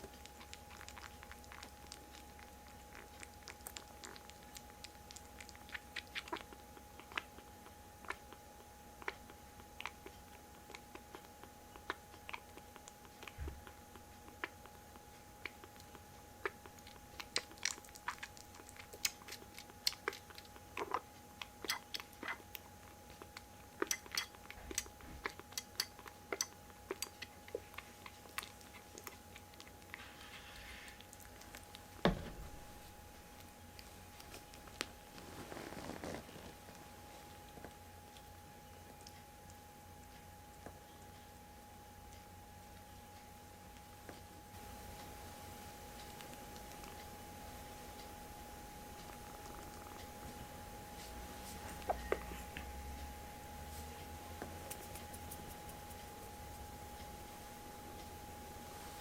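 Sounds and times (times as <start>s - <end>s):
faint steady hum: 0.0s - 59.0s
kittens chewing: 0.0s - 59.0s
thump: 32.0s - 32.6s.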